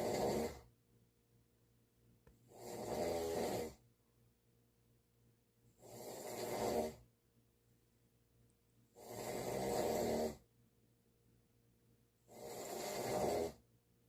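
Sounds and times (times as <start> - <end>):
snoring: 0.0 - 0.7, 2.5 - 3.8, 5.8 - 7.1, 8.9 - 10.5, 12.3 - 13.6.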